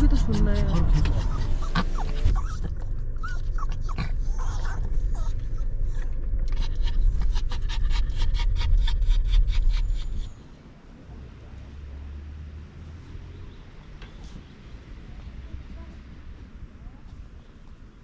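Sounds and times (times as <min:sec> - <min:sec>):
dog panting fast: 0:00.0 - 0:10.3
dog whimpering: 0:00.0 - 0:10.3
steady low rumble: 0:00.0 - 0:12.1.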